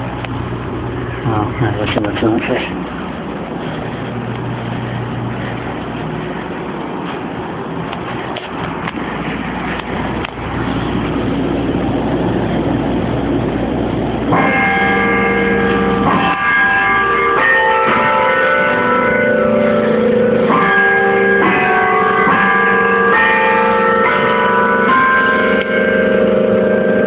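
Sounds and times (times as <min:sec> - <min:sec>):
carillon bells chiming: 0:14.3 - 0:27.0.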